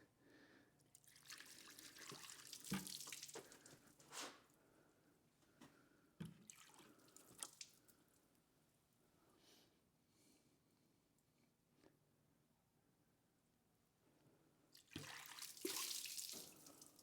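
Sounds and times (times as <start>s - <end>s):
water splashing on wood: 1.0s - 3.8s, 14.8s - 17.0s.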